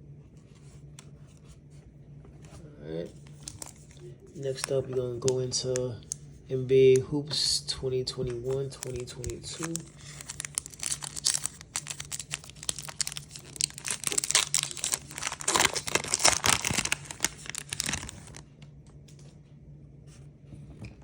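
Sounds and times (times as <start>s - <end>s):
foil wrapper crinkling: 3.2s - 5.8s, 8.3s - 18.4s.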